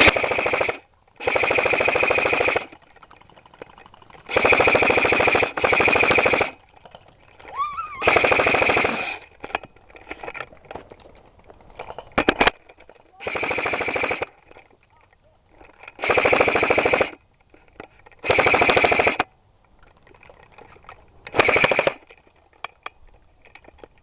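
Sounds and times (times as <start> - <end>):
airsoft gun firing bursts: 0.0 - 2.8, 4.3 - 6.6, 8.0 - 9.3, 13.2 - 14.3, 16.0 - 17.2, 18.2 - 19.2, 21.3 - 22.0.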